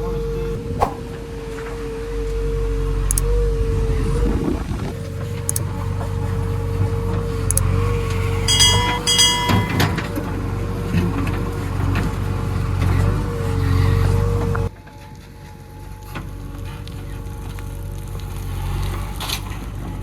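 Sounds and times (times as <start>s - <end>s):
short beeps: 8.5s - 9.9s.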